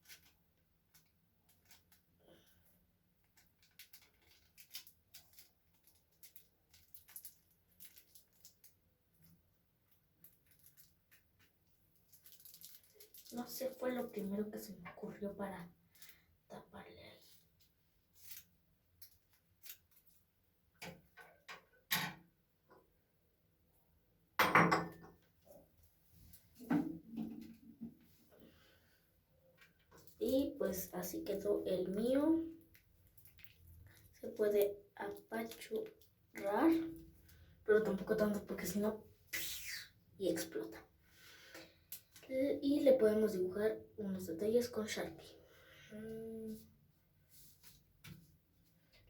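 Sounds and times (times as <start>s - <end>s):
plastic bag crinkling: 0.0s - 2.1s, 3.2s - 14.6s, 18.1s - 20.3s, 31.2s - 37.4s
tape being handled: 3.3s - 8.7s, 18.2s - 20.2s.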